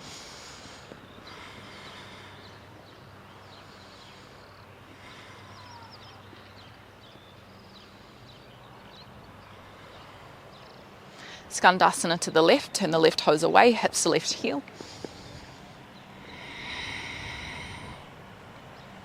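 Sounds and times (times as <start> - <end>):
faint birds chirping: 0.0 - 19.0
steady low hum: 13.8 - 19.0.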